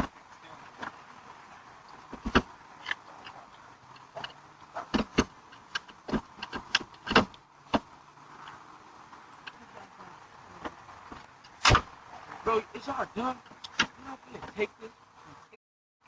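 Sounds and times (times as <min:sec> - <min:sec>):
sharp knocks and clunks on car: 0:01.9 - 0:02.6, 0:04.1 - 0:08.0.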